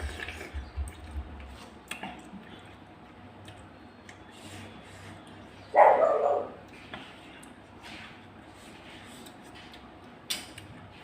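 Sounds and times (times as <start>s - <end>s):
dog barking: 5.7s - 6.6s.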